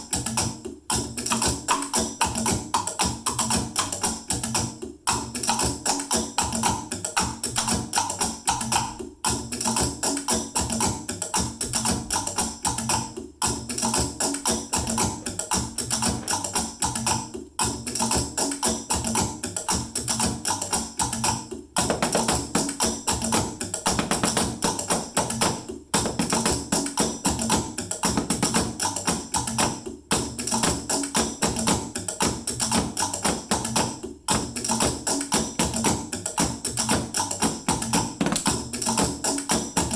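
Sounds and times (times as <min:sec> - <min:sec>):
sticks tapping household items: 0:21.9 - 0:26.6, 0:38.2 - 0:38.6.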